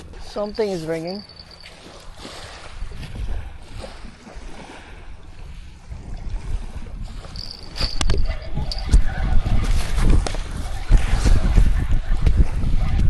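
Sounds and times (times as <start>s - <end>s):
waves at the shore: 0.0s - 13.0s
wind rumbling on microphone: 0.0s - 13.0s
steady high tone: 0.4s - 1.9s.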